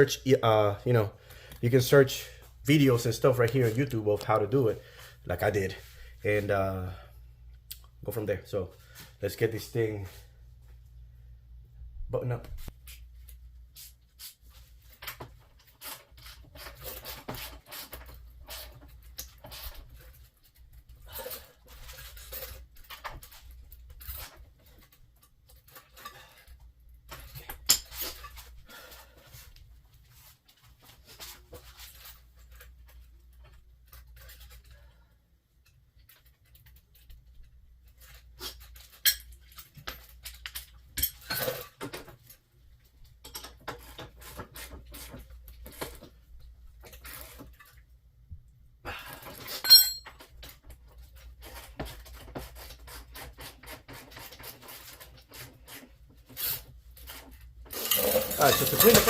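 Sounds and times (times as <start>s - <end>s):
hand tools clinking on metal: 49.6s - 50.2s, 57.8s - 59.0s.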